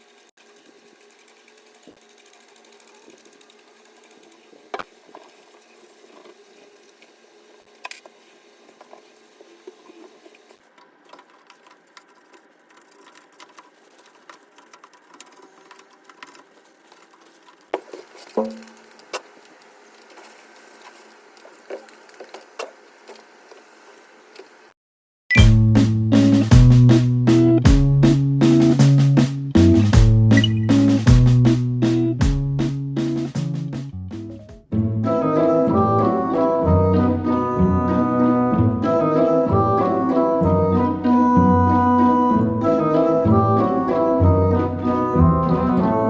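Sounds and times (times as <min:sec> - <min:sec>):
faint mechanical hum: 0:00.0 - 0:24.8
clicks and knocks: 0:17.8 - 0:19.3.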